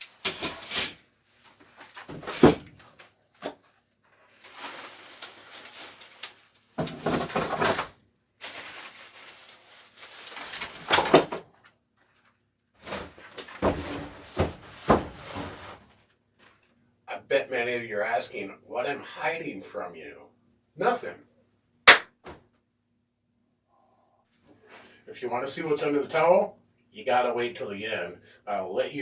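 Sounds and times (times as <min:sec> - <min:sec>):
rustling and clattering objects: 0:00.0 - 0:16.8.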